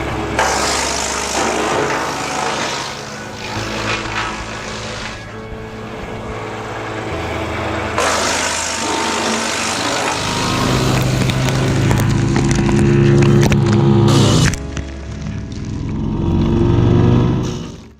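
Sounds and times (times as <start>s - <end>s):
wood chipper humming: 0.0s - 17.9s
chipping brush with crackles: 0.4s - 5.3s, 8.0s - 16.6s.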